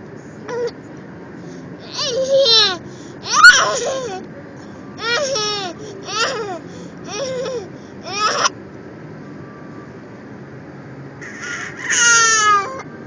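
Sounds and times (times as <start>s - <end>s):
toddler laughing with hiccups: 1.9s - 4.2s, 5.0s - 8.5s.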